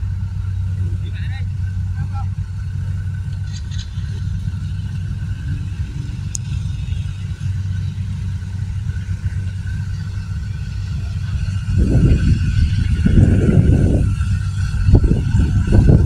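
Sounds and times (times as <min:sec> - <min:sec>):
diesel engine rumbling: 0:00.0 - 0:16.0.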